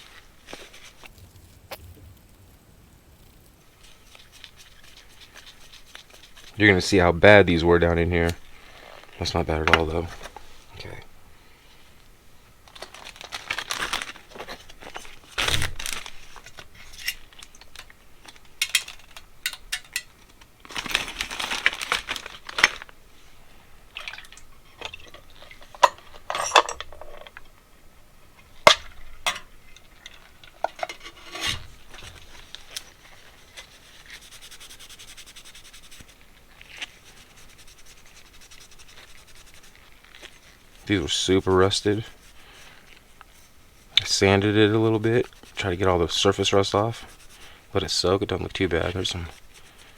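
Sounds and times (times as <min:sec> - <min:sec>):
metal parts clinking: 0:18.6 - 0:20.2, 0:24.7 - 0:27.4, 0:28.6 - 0:31.6
metal rubbing or scraping: 0:30.6 - 0:40.6.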